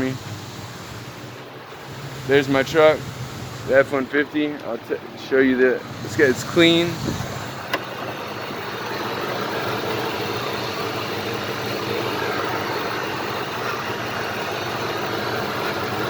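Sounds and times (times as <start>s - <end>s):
truck engine idling: 0.0s - 16.0s.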